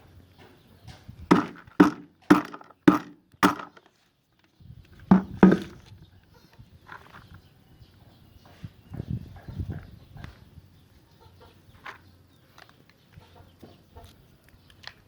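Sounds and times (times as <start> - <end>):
chopping wood: 1.3 - 3.8, 5.1 - 5.8.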